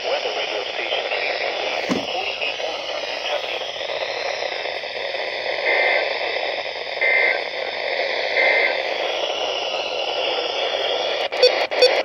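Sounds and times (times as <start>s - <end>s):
radio static hiss: 0.0s - 12.0s.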